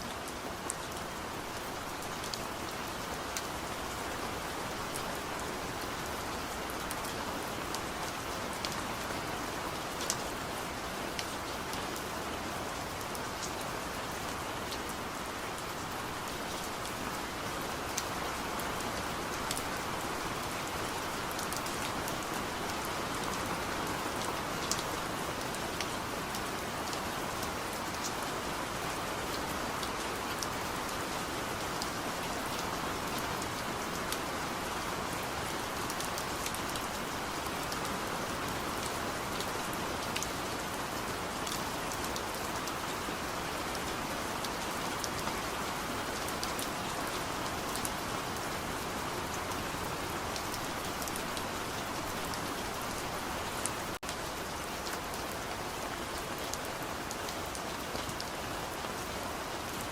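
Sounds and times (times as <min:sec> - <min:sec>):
raindrops ticking on a surface: 0:00.1 - 0:10.5.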